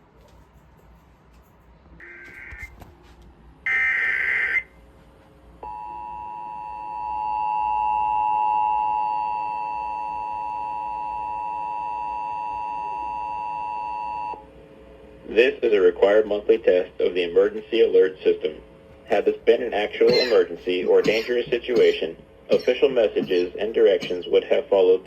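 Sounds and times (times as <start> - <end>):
two-tone attention signal: 2.0 - 2.7.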